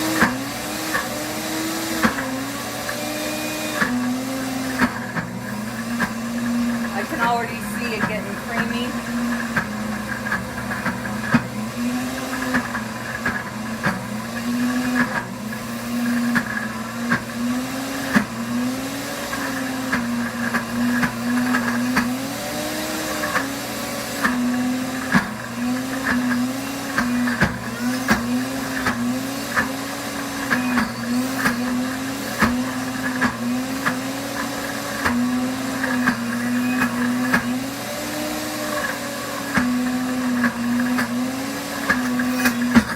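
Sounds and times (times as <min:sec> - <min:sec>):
blender motor grinding: 0:00.0 - 0:42.9.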